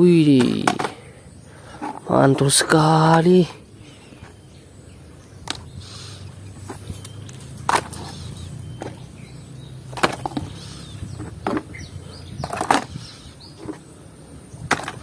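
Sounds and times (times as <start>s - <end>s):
toys knocking together: 0.4s - 1.0s.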